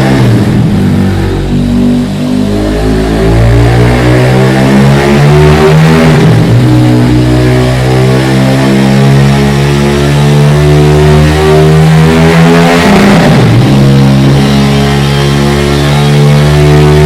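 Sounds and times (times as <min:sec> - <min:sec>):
motorcycle engine revving high: 0:00.0 - 0:17.0.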